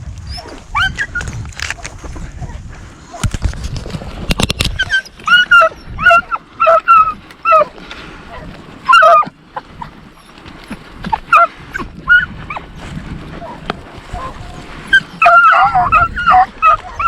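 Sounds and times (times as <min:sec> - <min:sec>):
dogs yelping and whining: 0:00.3 - 0:01.3, 0:04.8 - 0:10.4, 0:11.1 - 0:12.6, 0:13.4 - 0:17.0.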